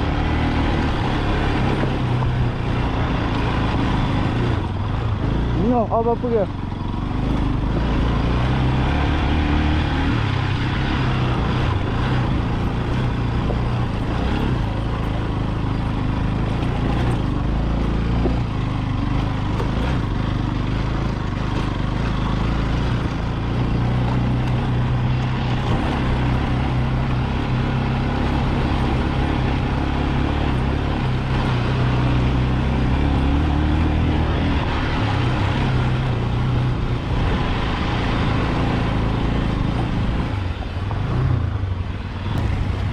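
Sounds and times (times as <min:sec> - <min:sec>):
motorcycle engine running: 0:00.0 - 0:42.9
wind noise: 0:22.7 - 0:42.9.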